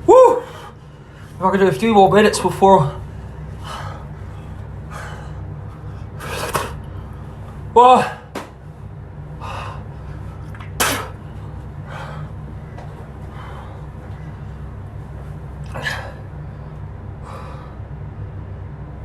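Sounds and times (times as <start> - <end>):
steady low hum: 0.0 - 19.0
man sniffing: 4.9 - 6.9, 10.8 - 11.2.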